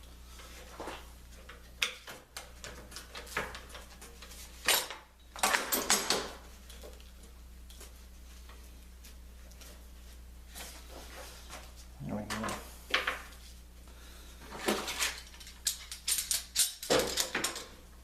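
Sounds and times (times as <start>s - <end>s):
tools knocking and clattering: 1.4s - 7.0s, 14.6s - 17.8s.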